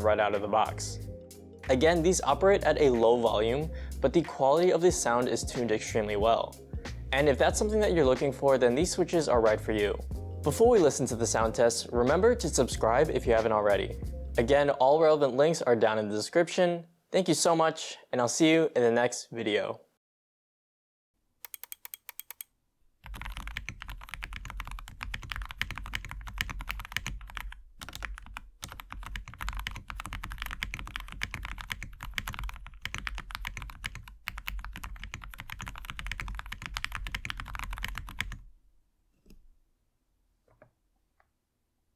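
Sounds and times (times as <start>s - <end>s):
keyboard typing: 21.4s - 38.5s.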